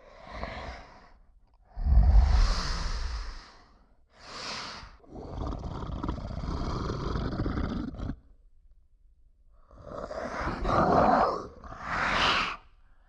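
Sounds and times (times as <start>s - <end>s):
rough animal-like growl: 1.7s - 3.6s, 5.0s - 8.3s
breathy burst: 1.8s - 3.8s.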